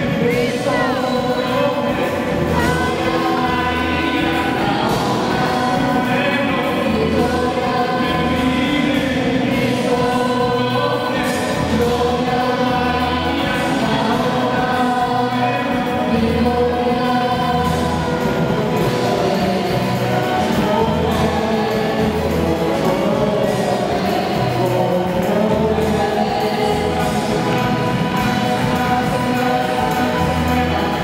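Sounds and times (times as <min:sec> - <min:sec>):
bass pulse: 0:00.0 - 0:06.3
choir singing worship song: 0:00.0 - 0:31.0.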